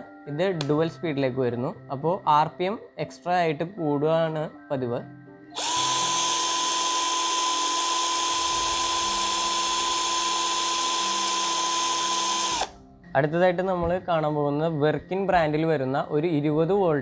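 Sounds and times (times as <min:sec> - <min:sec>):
cordless drill motor whining: 0:05.6 - 0:12.8.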